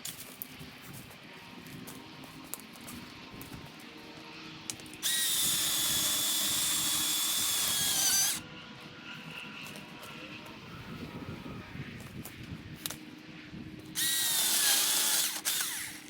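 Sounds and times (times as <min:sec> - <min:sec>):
battery chainsaw whining: 0:05.0 - 0:08.4, 0:14.0 - 0:16.0.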